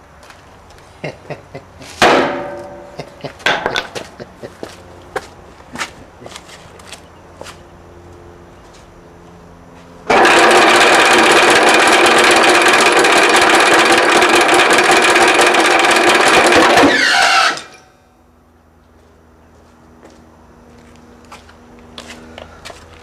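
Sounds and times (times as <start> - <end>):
air compressor clattering: 10.1 - 17.7.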